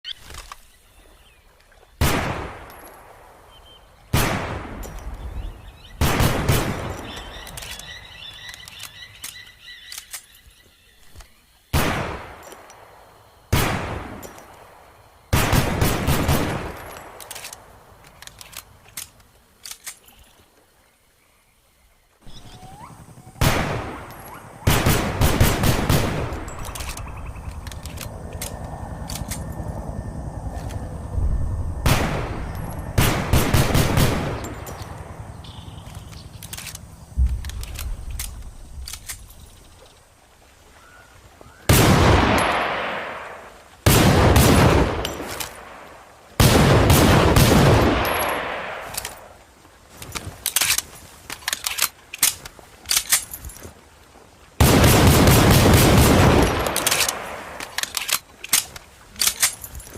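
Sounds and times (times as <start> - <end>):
pistol shots echoing: 23.4 - 26.8, 31.8 - 35.0.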